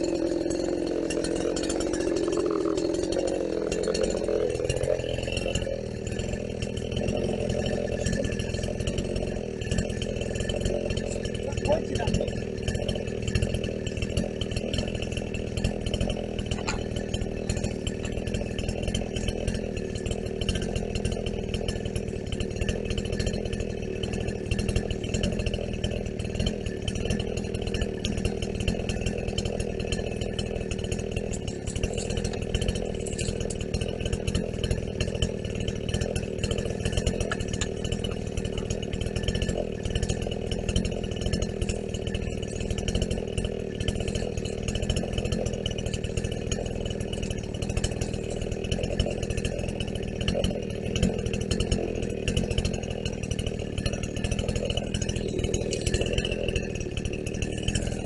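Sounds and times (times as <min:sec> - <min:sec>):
chainsaw cutting limbs: 0:00.0 - 0:58.0.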